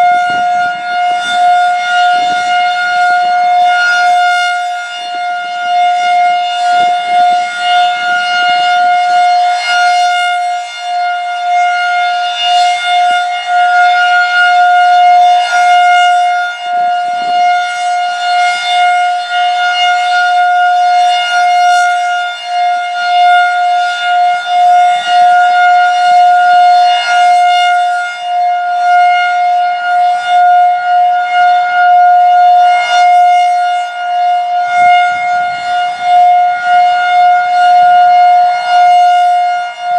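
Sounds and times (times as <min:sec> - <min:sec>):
tornado siren steady tone: 0:00.0 - 0:39.9.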